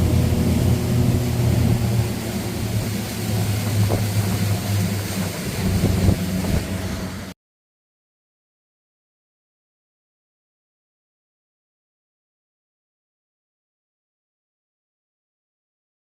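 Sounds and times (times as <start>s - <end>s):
motorboat engine running: 0.0s - 7.3s.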